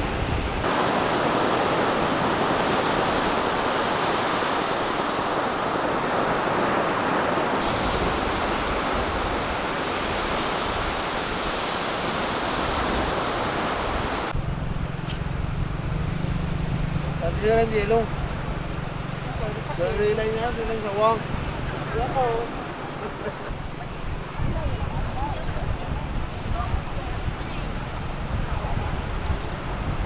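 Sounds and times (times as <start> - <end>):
water rushing: 0.0 - 28.9.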